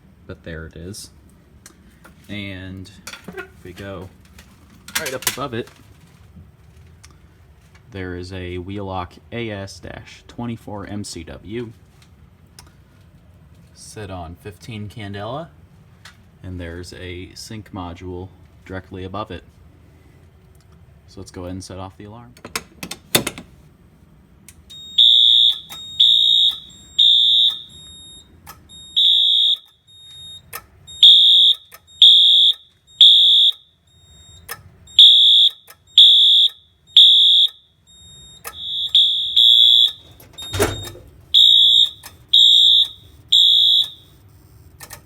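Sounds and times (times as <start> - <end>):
alarm horn blasts: 24.7 - 44.1.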